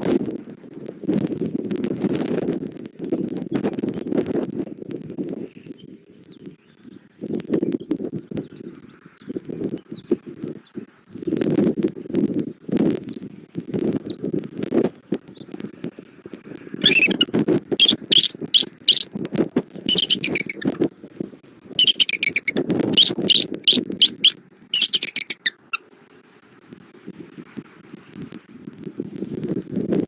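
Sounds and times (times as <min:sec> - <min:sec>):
wind buffeting microphone: 0:00.0 - 0:30.0
eagles high-pitched chirping: 0:16.8 - 0:19.1, 0:19.9 - 0:20.7, 0:21.8 - 0:25.8.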